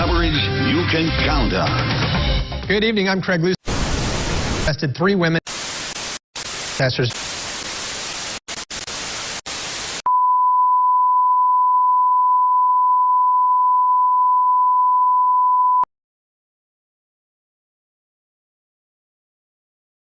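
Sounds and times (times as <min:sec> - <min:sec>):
hissing static: 0:03.6 - 0:04.7, 0:05.4 - 0:10.1.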